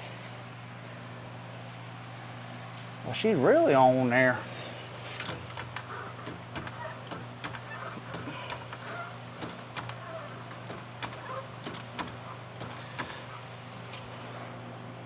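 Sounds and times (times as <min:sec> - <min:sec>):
steady low hum: 0:00.0 - 0:15.0
hand tools clicking on bolts: 0:05.2 - 0:14.1.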